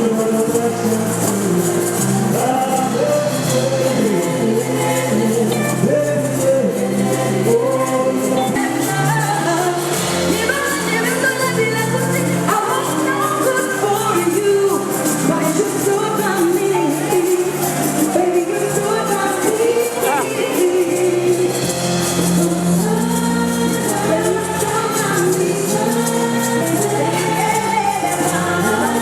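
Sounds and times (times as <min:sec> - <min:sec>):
pop song over sound system: 0:00.0 - 0:29.0.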